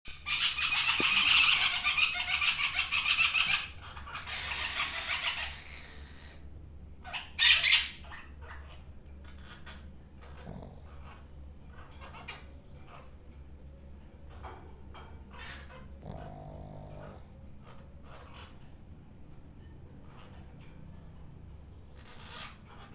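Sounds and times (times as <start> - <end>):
loud rattling snores: 10.4 - 11.2, 16.0 - 17.4
faint irregular breathing: 15.9 - 18.2.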